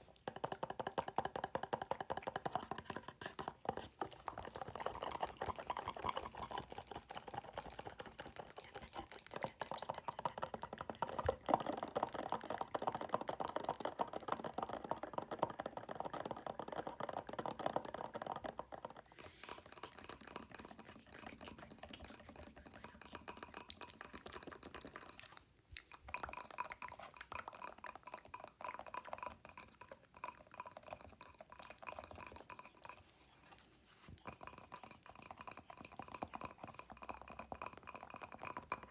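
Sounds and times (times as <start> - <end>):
fast fingernail tapping: 0.2 - 25.3.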